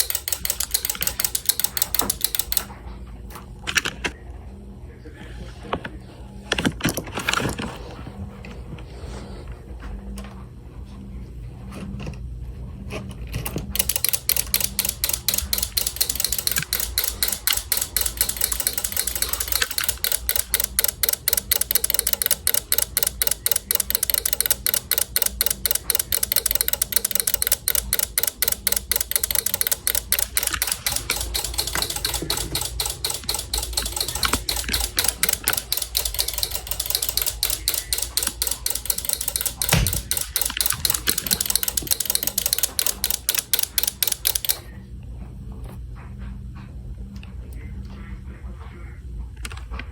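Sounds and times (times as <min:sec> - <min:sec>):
rapid mechanical clicking: 0:00.0 - 0:02.8, 0:13.3 - 0:44.7.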